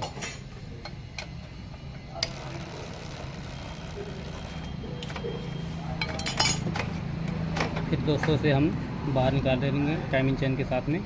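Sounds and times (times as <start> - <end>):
metal hand tools clinking: 6.0 - 6.8.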